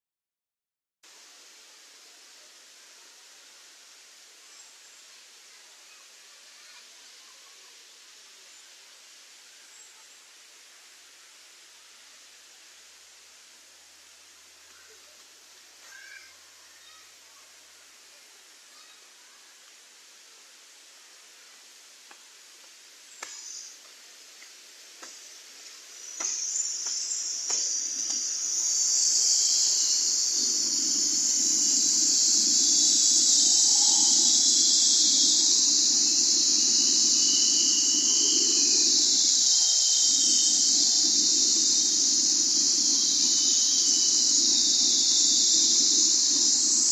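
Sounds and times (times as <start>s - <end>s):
low rumble of falling water: 1.0s - 46.9s
waterfall rushing hiss: 1.1s - 46.9s
faint clicks: 22.1s - 25.2s.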